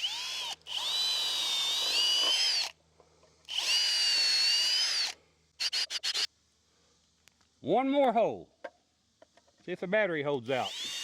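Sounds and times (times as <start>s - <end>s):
cordless drill whining: 0.0s - 2.8s, 3.4s - 6.3s, 10.5s - 11.0s.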